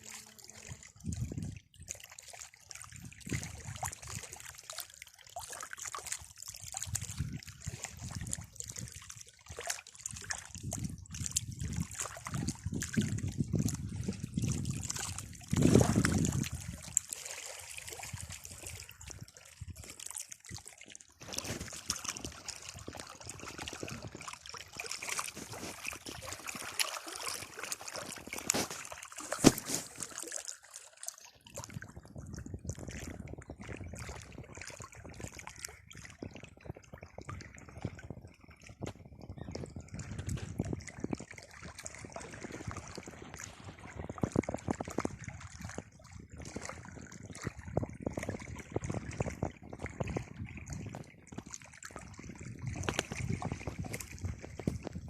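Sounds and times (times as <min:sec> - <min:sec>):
water trickling and splashing: 0:00.0 - 0:55.0
low water surge: 0:14.0 - 0:36.0.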